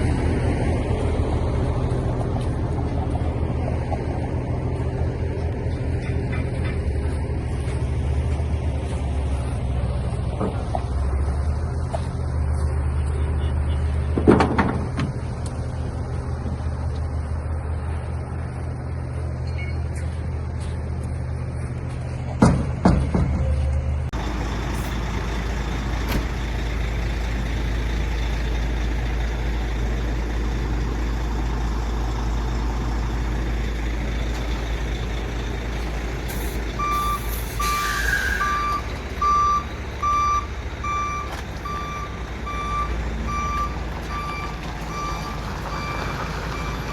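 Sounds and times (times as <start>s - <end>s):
diesel engines running: 0.0s - 46.9s
air release hiss: 36.3s - 38.6s
reversing alarm beeping: 36.8s - 46.9s.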